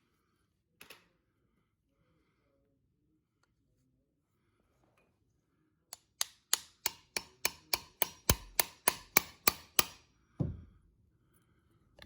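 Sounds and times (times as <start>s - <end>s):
hammer striking nails: 6.0s - 10.0s.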